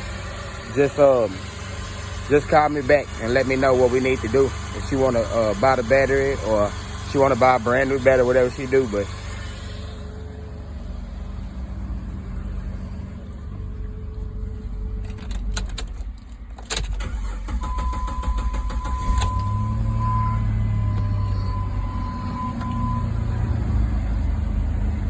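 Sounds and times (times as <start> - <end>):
car engine running: 0.0 - 25.0
electronic warning chime: 17.6 - 23.2
clicks: 20.8 - 23.1.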